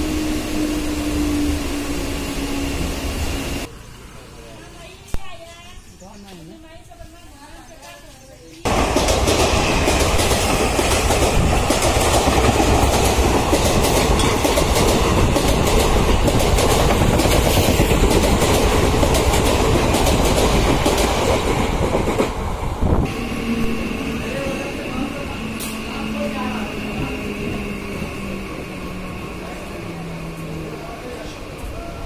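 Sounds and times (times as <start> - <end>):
train wheels rumbling on rails: 8.6 - 32.0.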